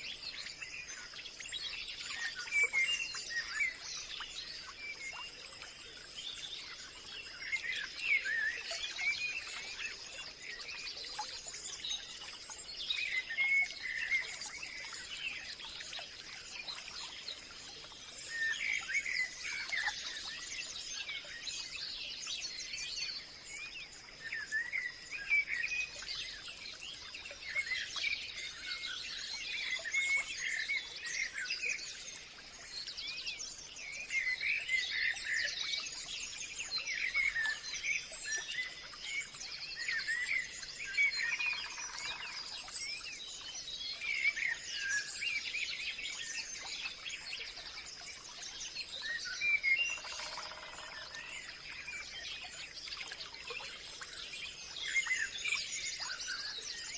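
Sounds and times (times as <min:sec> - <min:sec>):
birds chirping in chorus: 0:34.0 - 0:48.1, 0:48.7 - 0:56.9.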